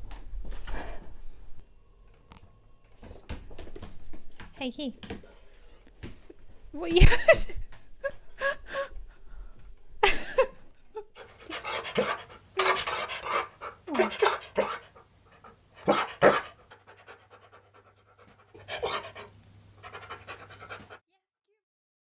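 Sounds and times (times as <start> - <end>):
dog panting: 11.2 - 21.0.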